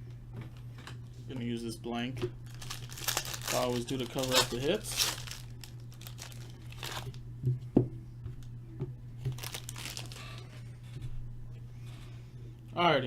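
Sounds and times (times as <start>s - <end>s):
steady low hum: 0.0s - 13.0s
cards crinkling and rustling: 2.4s - 7.2s, 9.3s - 10.5s.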